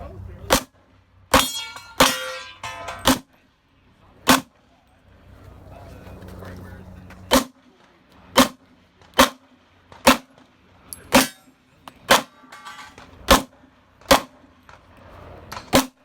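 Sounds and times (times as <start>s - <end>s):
pistol shots: 4.3s - 4.5s, 7.3s - 7.5s, 8.4s - 9.4s, 10.0s - 10.3s, 13.3s - 14.4s.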